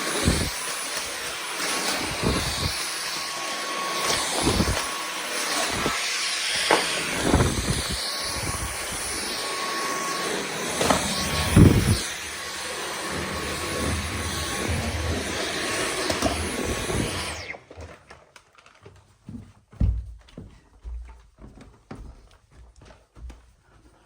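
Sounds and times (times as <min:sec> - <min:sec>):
vacuum cleaner running: 0:00.0 - 0:18.0.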